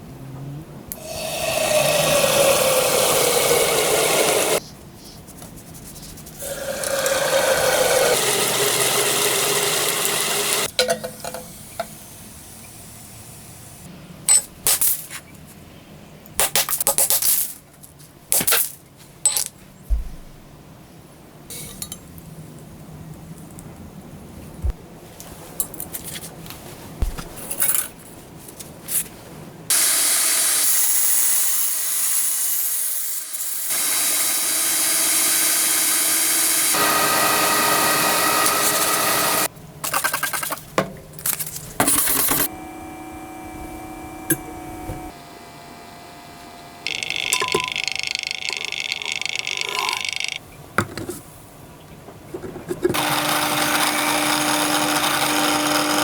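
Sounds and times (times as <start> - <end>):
power tools whining: 0.9 - 4.6, 6.4 - 10.8, 33.7 - 39.5, 41.8 - 50.4, 52.9 - 56.0.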